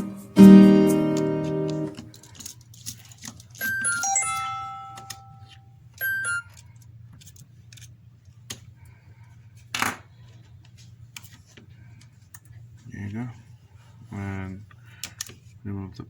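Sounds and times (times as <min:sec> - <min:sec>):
two-note chime: 0:00.0 - 0:02.0, 0:03.6 - 0:05.6
bright bell-like chime: 0:03.6 - 0:05.5.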